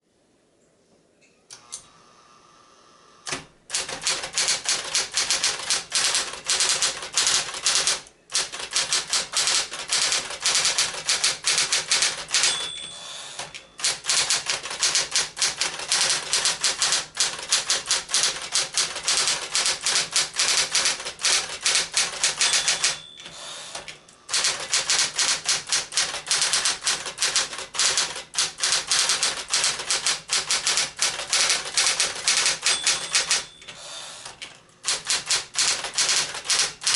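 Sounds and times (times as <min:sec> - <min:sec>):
typewriter motor hum: 0:03.2 - 0:36.9
typewriter keystroke clicks: 0:03.3 - 0:36.9
typewriter bell: 0:03.8 - 0:33.8, 0:34.9 - 0:36.9.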